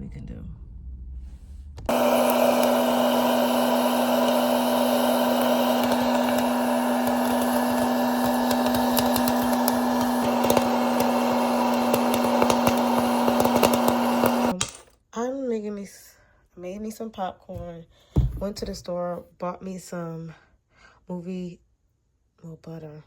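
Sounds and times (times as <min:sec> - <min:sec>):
popcorn popper motor whirring: 0:01.9 - 0:14.6
popcorn kernels popping: 0:01.9 - 0:14.8.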